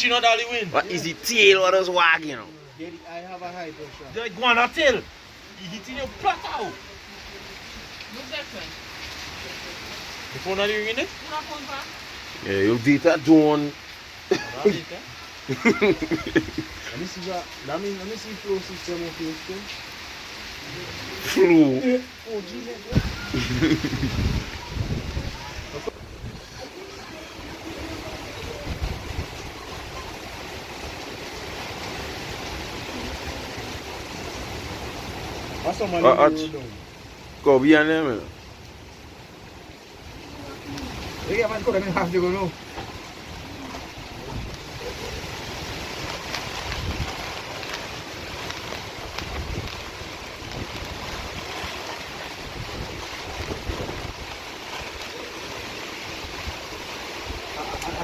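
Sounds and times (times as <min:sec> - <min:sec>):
strong wind and rain: 0:00.0 - 0:58.0
wind buffeting microphone: 0:22.9 - 0:30.4, 0:43.0 - 0:47.7, 0:48.5 - 0:55.0
strong wind blowing: 0:22.9 - 0:33.7, 0:42.5 - 0:47.6, 0:48.2 - 0:55.0.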